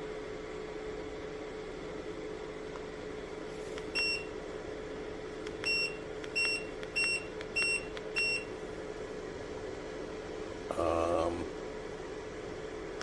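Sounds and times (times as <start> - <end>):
steady hum: 0.0 - 13.0.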